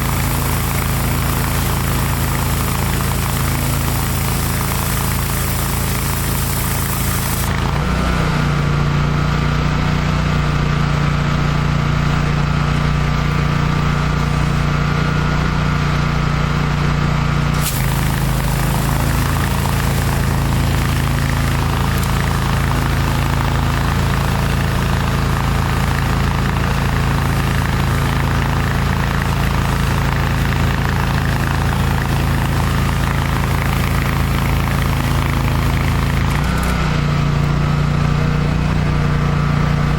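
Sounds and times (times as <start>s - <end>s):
pressure washer engine running: 0.0s - 39.9s.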